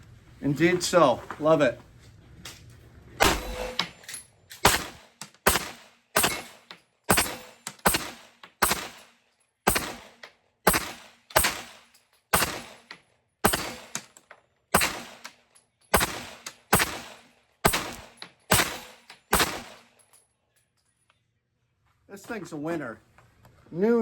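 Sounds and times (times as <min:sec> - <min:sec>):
pistol shots with echo: 0:03.2 - 0:03.9, 0:04.6 - 0:14.0, 0:14.7 - 0:15.3, 0:15.9 - 0:19.9.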